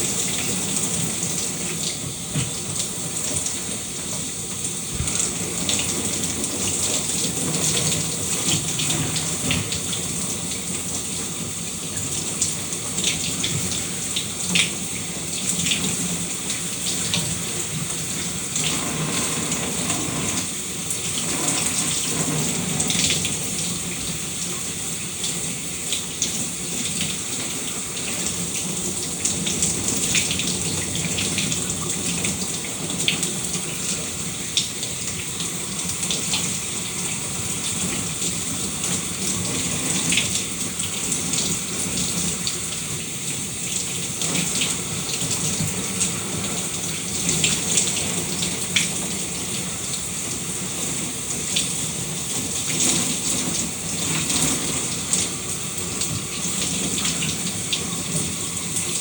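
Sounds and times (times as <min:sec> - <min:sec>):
shower spraying water: 0:00.0 - 0:59.0.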